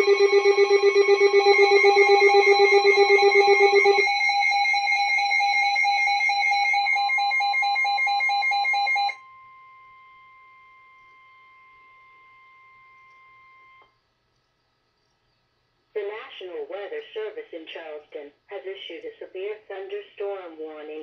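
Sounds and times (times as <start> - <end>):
pulsing electronic alarm tone: 0.0 - 13.9
faint steady tone: 0.0 - 16.2.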